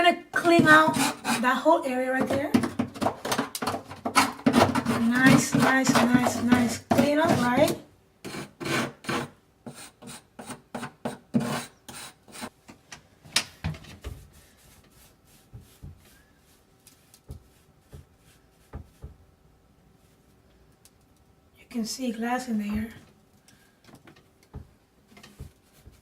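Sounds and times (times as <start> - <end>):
scraping on wooden frame: 0.4 - 12.5.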